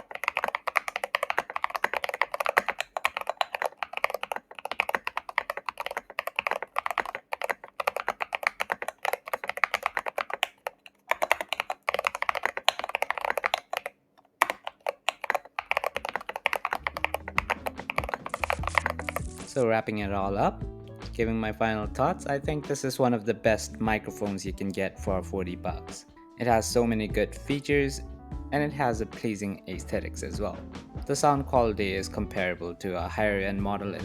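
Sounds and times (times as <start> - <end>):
fast typing on mechanical keyboard: 0.0 - 19.6.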